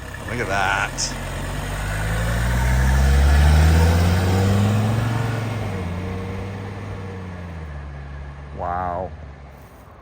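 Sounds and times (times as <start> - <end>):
diesel car pulling away: 0.0 - 9.6.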